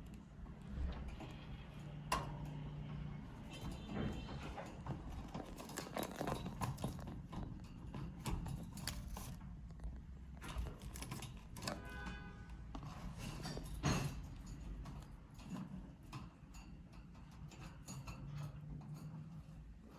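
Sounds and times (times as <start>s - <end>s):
bird claws scratching hard surface: 5.3s - 9.5s.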